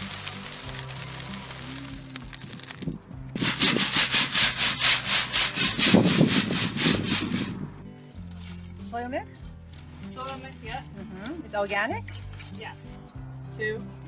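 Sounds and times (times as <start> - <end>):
steady hiss: 0.0 - 5.7
faint background music: 0.0 - 14.0
rhythmic scraping strokes: 3.3 - 8.7.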